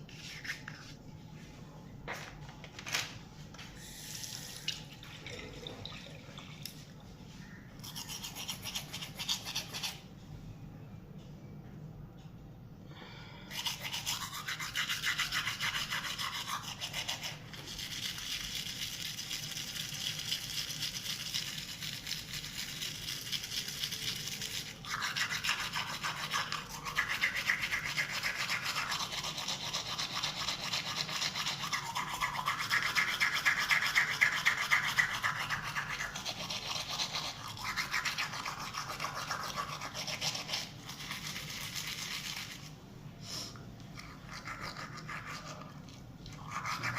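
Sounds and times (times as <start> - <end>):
toothbrush scrubbing teeth: 7.8 - 10.1, 13.5 - 42.8, 43.9 - 46.9.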